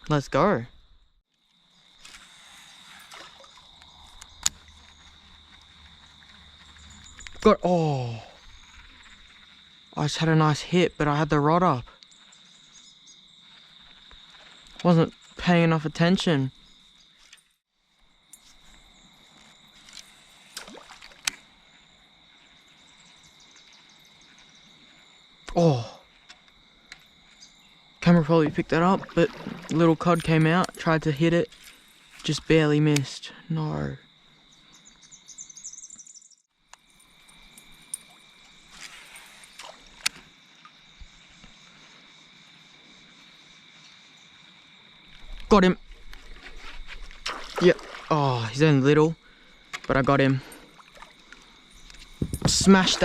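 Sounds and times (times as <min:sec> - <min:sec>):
insects chirring: 0:00.0 - 0:53.0
water dripping and sloshing: 0:03.0 - 0:07.5, 0:19.4 - 0:21.5, 0:28.5 - 0:32.2, 0:36.9 - 0:40.2, 0:45.1 - 0:48.6, 0:49.7 - 0:53.0
water lapping around a kayak: 0:18.5 - 0:25.4, 0:28.5 - 0:30.2, 0:45.1 - 0:48.1, 0:50.6 - 0:53.0
short splash: 0:20.5 - 0:21.4, 0:28.6 - 0:30.0, 0:47.1 - 0:48.5.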